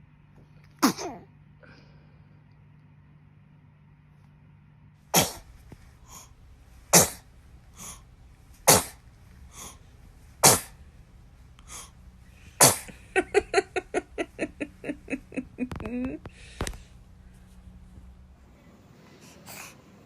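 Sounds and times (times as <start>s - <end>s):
baby sneezing: 0.8s - 1.3s, 5.2s - 5.5s, 6.9s - 8.0s, 8.6s - 9.0s, 10.4s - 10.8s, 12.6s - 12.9s.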